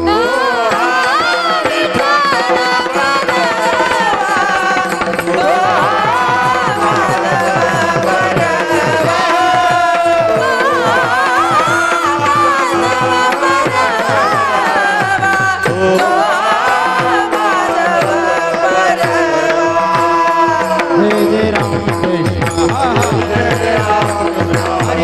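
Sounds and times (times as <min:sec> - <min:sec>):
hand drum beat: 0:00.0 - 0:25.0.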